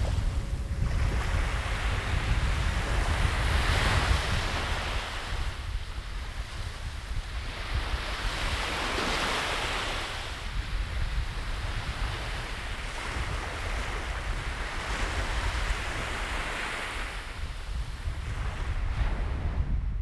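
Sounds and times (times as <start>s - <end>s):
sea waves washing in: 0.0s - 10.6s
wind buffeting microphone: 0.0s - 20.0s.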